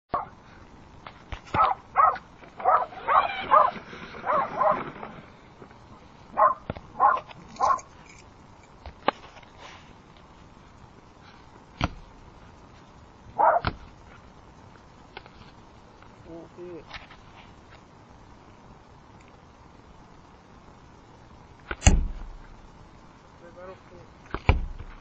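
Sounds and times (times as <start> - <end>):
dog barking: 0.1 - 0.4, 1.5 - 4.9, 6.3 - 7.9, 13.4 - 13.7.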